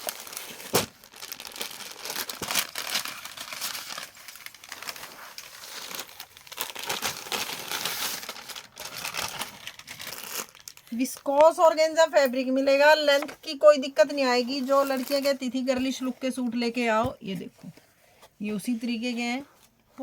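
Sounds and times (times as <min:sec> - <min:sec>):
packaging crinkling and rustling: 0:00.0 - 0:11.8, 0:14.3 - 0:16.0.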